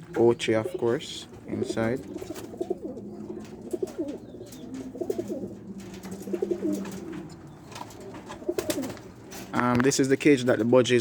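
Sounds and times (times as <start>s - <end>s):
pigeons cooing: 0.0s - 9.6s.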